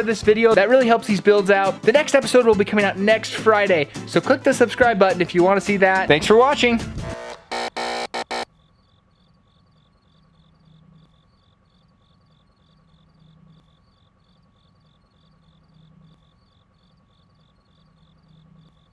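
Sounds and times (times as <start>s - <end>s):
crickets chirping: 8.4s - 18.9s.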